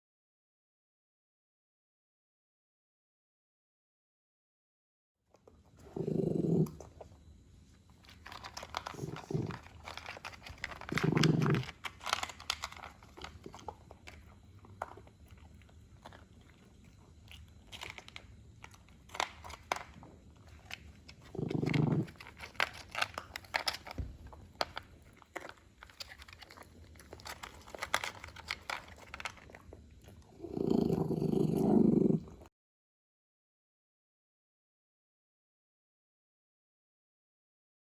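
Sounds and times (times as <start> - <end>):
dog chewing and crunching food: 5.3 - 32.5
dog growling low: 5.7 - 7.2, 8.7 - 12.2, 21.1 - 22.5, 30.0 - 32.5.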